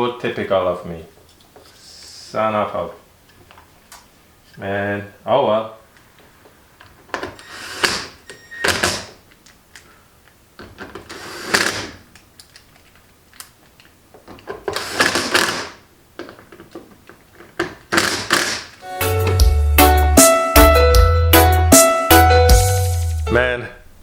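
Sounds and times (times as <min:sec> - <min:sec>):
background music: 0:18.8 - 0:23.8.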